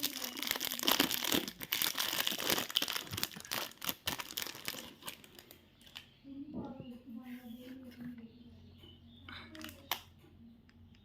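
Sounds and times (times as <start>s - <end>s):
wrapper crinkling: 0.0s - 6.1s.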